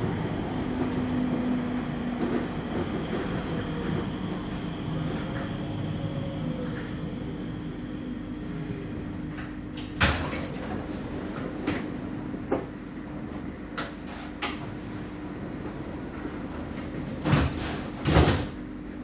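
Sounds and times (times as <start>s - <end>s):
tram motor whine: 0.0s - 13.8s
tram electrical hum: 0.0s - 19.0s.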